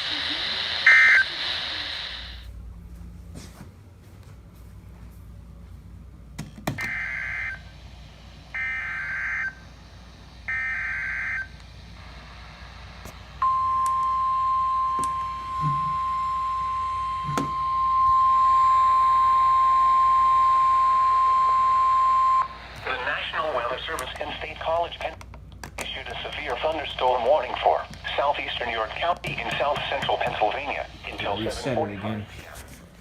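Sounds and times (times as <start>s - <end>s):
steady single-pitch alarm tone: 0.8s - 1.4s, 6.8s - 22.7s.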